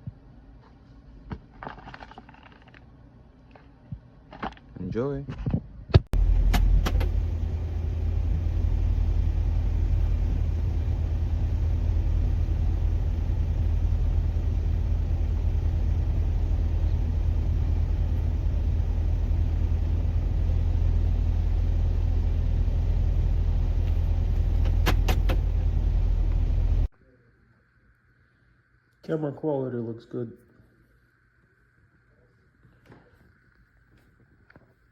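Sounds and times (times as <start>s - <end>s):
vehicle rumbling on the move: 6.2s - 26.9s.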